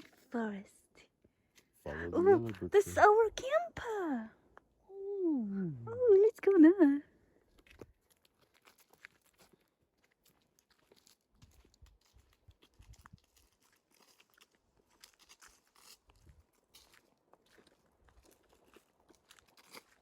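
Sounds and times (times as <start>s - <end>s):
faint crunches and clicks: 7.4s - 20.0s.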